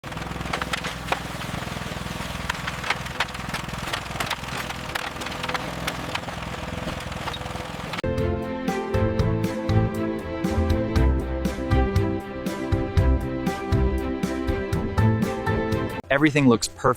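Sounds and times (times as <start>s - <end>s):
machine engine running: 0.0s - 8.0s
sharp knocks and cracks: 0.0s - 8.0s.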